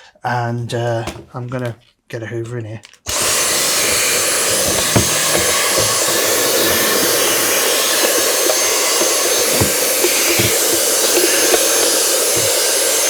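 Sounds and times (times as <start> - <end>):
nozzle knocking on plastic: 3.1 - 12.8
vacuum cleaner high whine: 3.1 - 13.0.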